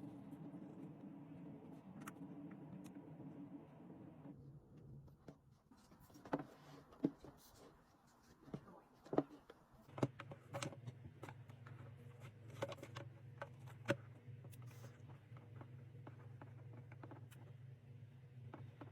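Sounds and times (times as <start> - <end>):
low steady hum: 0.0 - 18.9.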